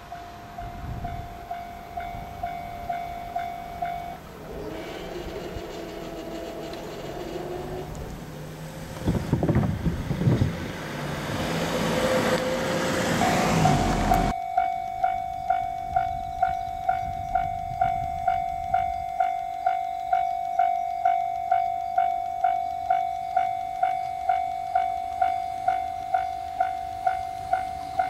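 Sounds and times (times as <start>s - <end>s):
train wheels clacking: 0.0s - 10.5s, 13.1s - 28.0s
train rushing noise: 0.0s - 14.4s, 22.9s - 28.0s
level crossing bell ringing: 0.1s - 4.3s, 13.2s - 28.0s.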